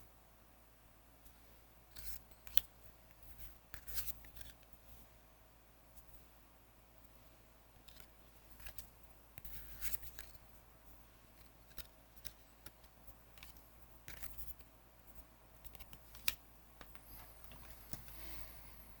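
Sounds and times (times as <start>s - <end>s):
cards clicking and sliding: 3.7s - 4.6s, 7.8s - 10.4s, 11.4s - 14.7s, 15.6s - 18.2s
cards rustling: 7.8s - 10.4s, 11.4s - 14.7s, 15.6s - 18.3s.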